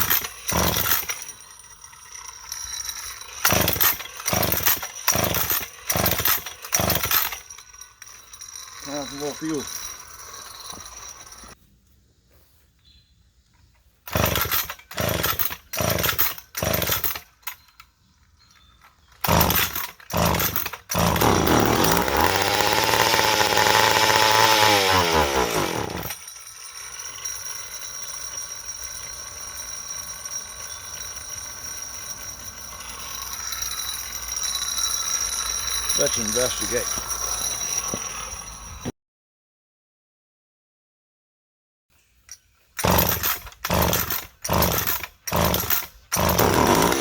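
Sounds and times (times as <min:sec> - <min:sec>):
chainsaw engine running: 0:00.0 - 0:01.4, 0:02.1 - 0:11.6, 0:14.1 - 0:17.3, 0:19.2 - 0:29.8, 0:30.6 - 0:38.3, 0:42.8 - 0:47.0
chainsaw pull-start cord pulls: 0:00.0 - 0:11.6, 0:14.0 - 0:17.9, 0:18.6 - 0:28.4, 0:31.0 - 0:38.3, 0:42.3 - 0:47.0.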